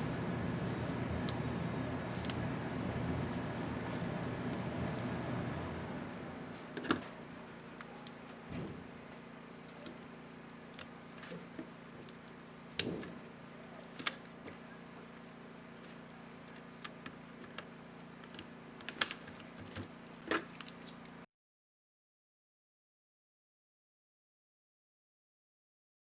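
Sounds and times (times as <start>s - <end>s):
steady low hum: 0.0s - 21.2s.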